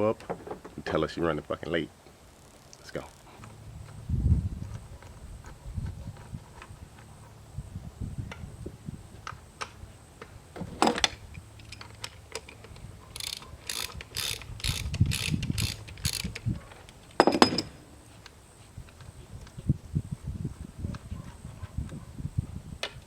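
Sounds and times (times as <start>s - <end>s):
ratchet wrench clicking: 11.0s - 16.5s
metal clatter: 17.2s - 17.8s.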